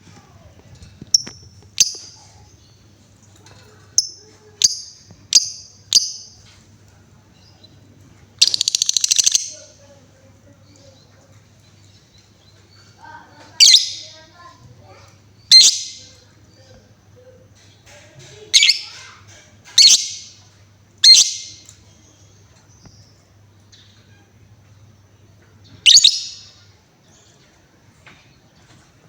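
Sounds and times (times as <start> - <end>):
lovebird chirping: 4.0 - 6.4, 8.4 - 9.7, 13.5 - 14.2, 15.4 - 16.2, 18.5 - 19.0, 19.8 - 20.4, 21.0 - 21.7, 25.6 - 27.3
lovebird rattling trill: 8.4 - 9.6, 21.0 - 21.6, 25.8 - 26.6.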